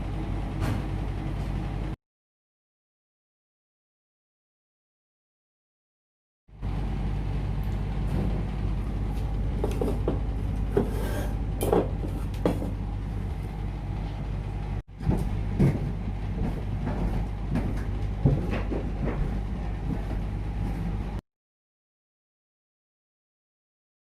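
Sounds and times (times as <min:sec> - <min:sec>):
steady low hum: 0:00.0 - 0:02.0, 0:06.5 - 0:21.2.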